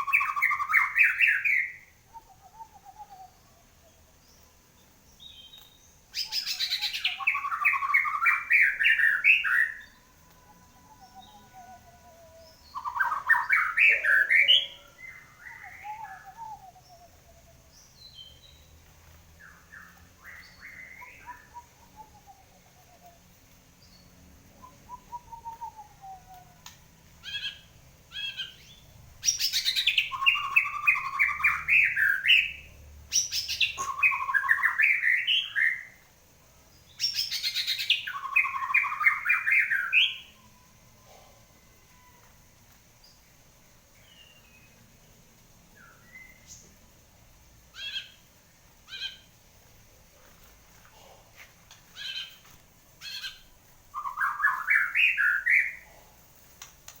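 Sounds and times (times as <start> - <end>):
bird singing: 0.0 - 47.0, 47.7 - 56.1
short bird calls: 24.6 - 36.0, 47.7 - 49.4, 50.8 - 56.2.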